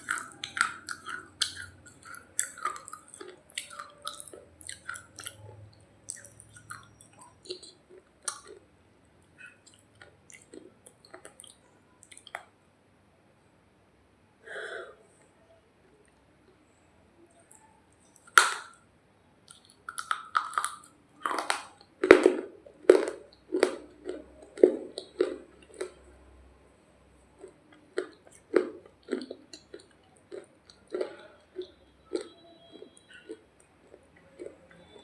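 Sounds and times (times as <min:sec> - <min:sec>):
crunchy biting and chewing: 0:00.0 - 0:08.6, 0:19.5 - 0:26.1, 0:27.3 - 0:35.0.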